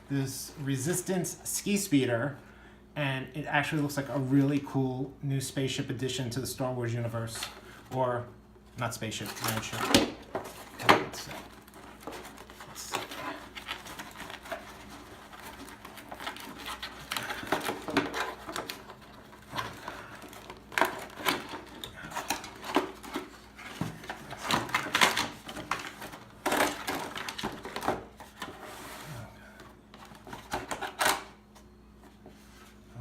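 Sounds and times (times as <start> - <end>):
packaging crackling and rustling: 9.2 - 28.6.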